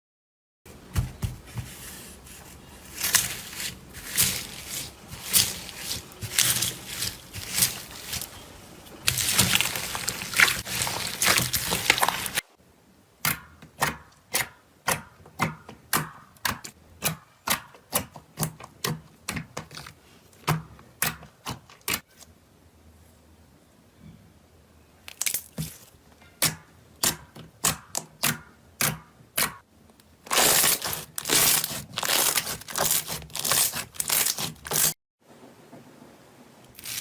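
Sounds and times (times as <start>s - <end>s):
crisp pops: 9.0s - 12.4s
slime crackling and snapping: 9.0s - 12.4s, 30.3s - 34.9s.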